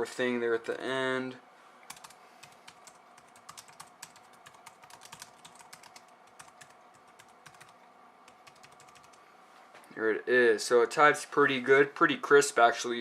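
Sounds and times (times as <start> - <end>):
keyboard keys clicking: 1.9 - 9.2.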